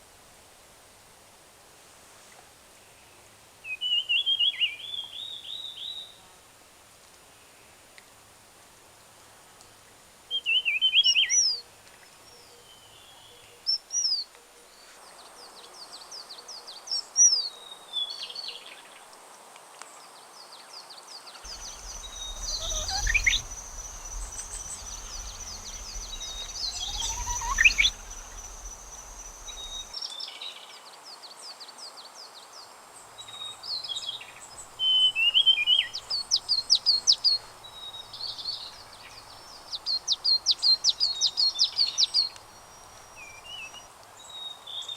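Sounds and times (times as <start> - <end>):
fast run of repeated bird notes: 21.5 - 29.9
low rumble: 21.5 - 29.9
songbirds chirping and whistling: 21.5 - 30.0, 33.3 - 43.9.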